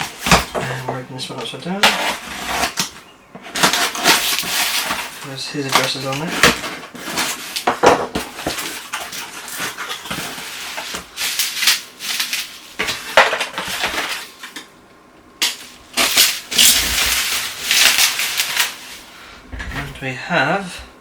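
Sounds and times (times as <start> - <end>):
parcel packaging being torn open: 3.5 - 7.7, 15.4 - 18.8.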